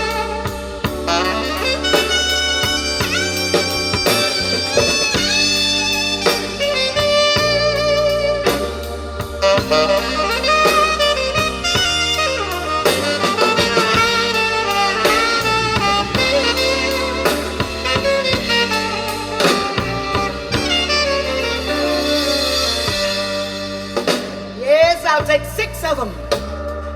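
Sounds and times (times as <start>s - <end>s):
bass: 0.0s - 26.9s
drum kit: 0.0s - 26.9s
saxophone melody: 0.0s - 26.9s.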